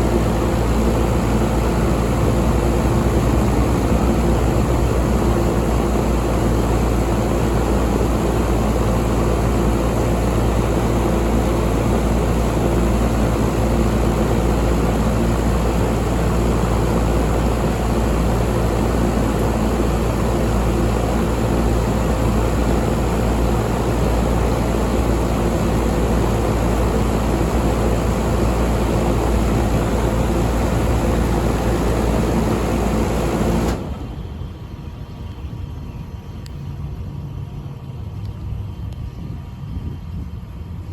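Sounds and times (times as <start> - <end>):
rush of air: 0.0 - 8.8
air conditioner unit humming: 0.0 - 40.9.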